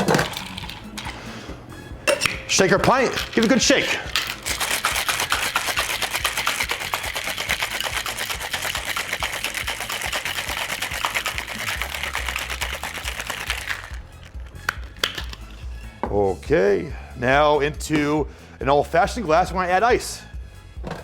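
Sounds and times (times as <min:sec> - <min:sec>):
ice rattling in cocktail shaker: 0:00.0 - 0:01.2, 0:02.5 - 0:15.6.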